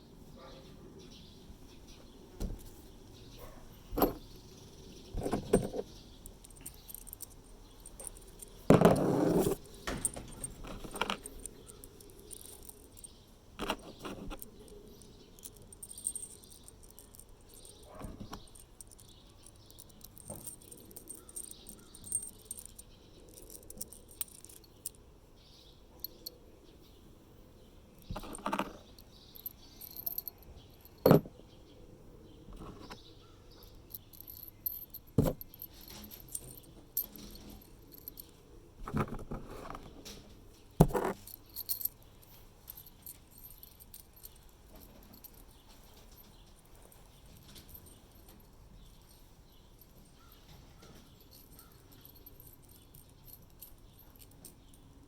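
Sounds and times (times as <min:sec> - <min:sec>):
small metal parts clinking: 0:03.9 - 0:04.4, 0:05.0 - 0:25.1, 0:26.0 - 0:26.4, 0:28.0 - 0:31.4, 0:32.5 - 0:55.0
metal clatter: 0:05.2 - 0:25.0.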